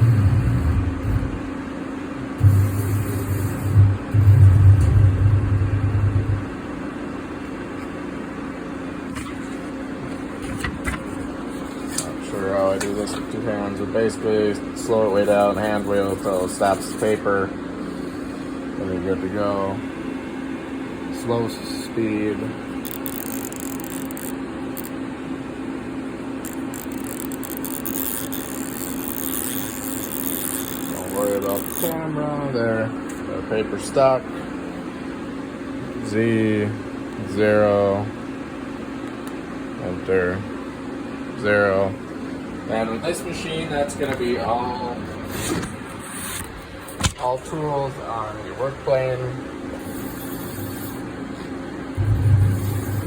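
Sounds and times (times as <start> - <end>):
lathe drive buzzing: 0.0 - 18.7, 19.8 - 25.1, 25.7 - 32.0, 49.5 - 53.0
machine hum: 0.0 - 32.2, 32.8 - 53.0.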